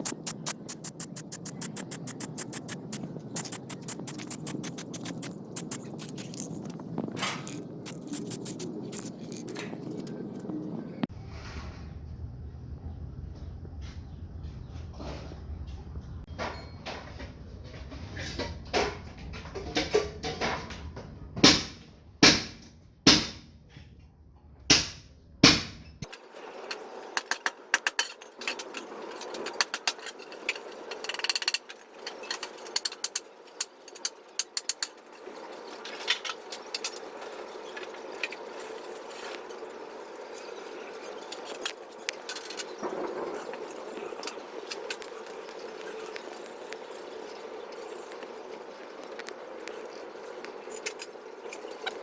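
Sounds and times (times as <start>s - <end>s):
quick light clicks and scraping: 0.0s - 10.6s
steady hum: 0.0s - 11.1s.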